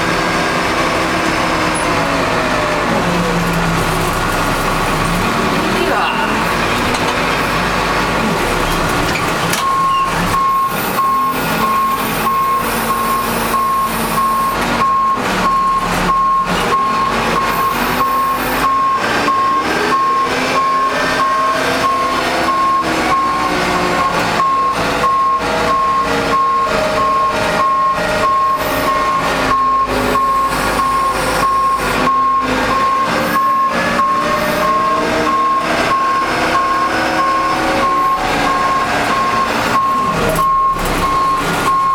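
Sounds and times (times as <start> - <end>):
diesel engine under load: 0.0 - 41.9
backup alarm beeping: 9.6 - 23.5, 24.1 - 41.9.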